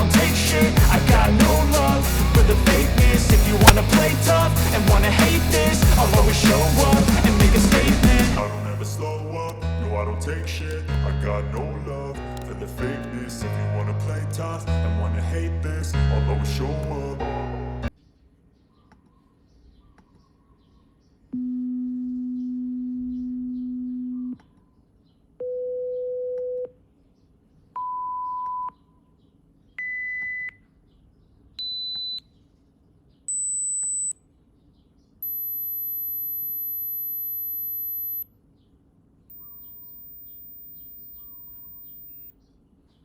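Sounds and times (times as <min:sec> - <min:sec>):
pure-tone hearing test beeps: 0:27.8 - 0:28.8, 0:31.6 - 0:32.3, 0:33.3 - 0:34.2, 0:35.2 - 0:38.2, 0:39.3 - 0:42.3
faint bird chirps: 0:30.6 - 0:43.0.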